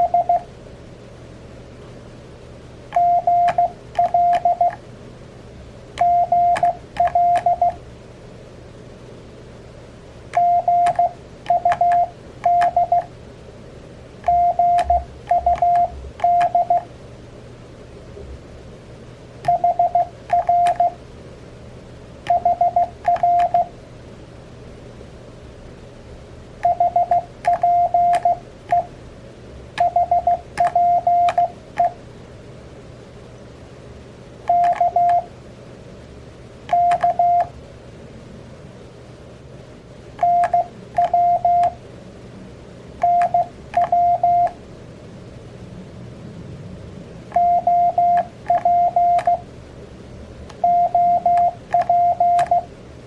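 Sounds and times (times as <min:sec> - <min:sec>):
morse code tone: 0:00.0 - 0:00.5, 0:03.0 - 0:04.8, 0:06.0 - 0:07.8, 0:10.4 - 0:13.1, 0:14.2 - 0:16.9, 0:19.4 - 0:21.0, 0:22.3 - 0:23.7, 0:26.6 - 0:28.9, 0:29.8 - 0:32.0, 0:34.5 - 0:35.3, 0:36.7 - 0:37.5, 0:40.2 - 0:41.8, 0:43.0 - 0:44.6, 0:47.3 - 0:49.4, 0:50.6 - 0:52.7.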